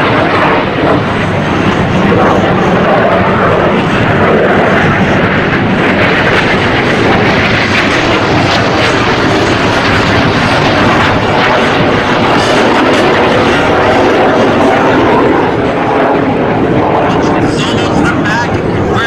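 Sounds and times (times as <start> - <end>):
jets flying over: 0.0 - 19.0.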